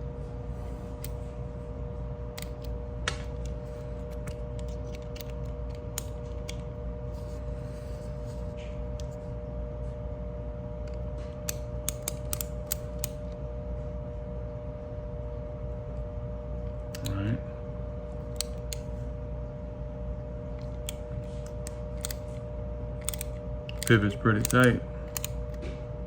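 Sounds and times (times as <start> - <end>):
steady hum: 0.0 - 26.0.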